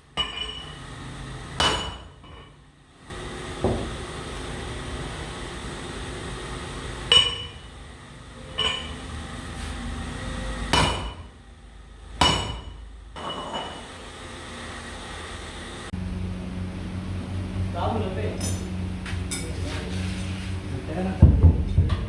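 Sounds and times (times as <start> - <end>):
low machine hum: 0.0 - 22.0
hammer clanging on metal: 10.8 - 11.3, 12.2 - 13.7.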